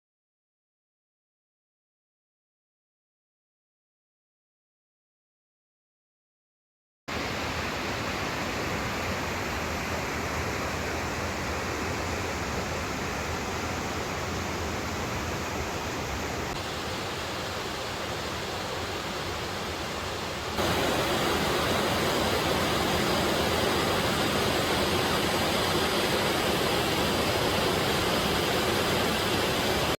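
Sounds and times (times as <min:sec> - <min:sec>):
waterfall rushing: 0:07.1 - 0:30.0.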